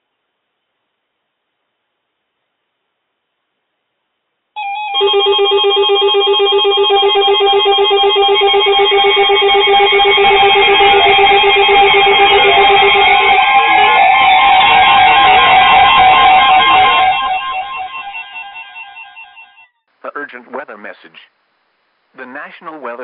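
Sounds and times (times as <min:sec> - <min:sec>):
pulsing beep: 0:04.6 - 0:19.6
warbling electronic alarm tones: 0:04.6 - 0:19.7
rising electronic sweep: 0:05.8 - 0:19.3.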